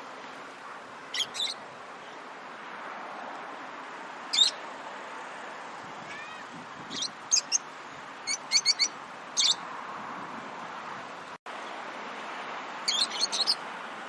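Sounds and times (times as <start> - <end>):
lovebirds chirping: 1.1 - 2.2, 4.3 - 4.6, 6.9 - 9.6, 12.9 - 13.6.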